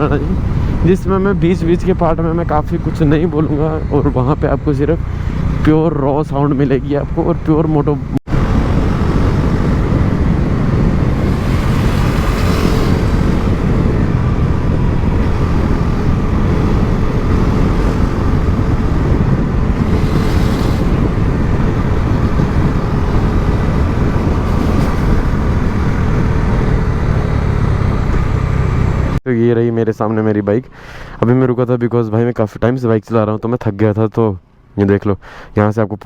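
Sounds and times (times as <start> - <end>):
rushing noise: 8.0 - 29.2
motorcycle engine running: 8.3 - 29.2.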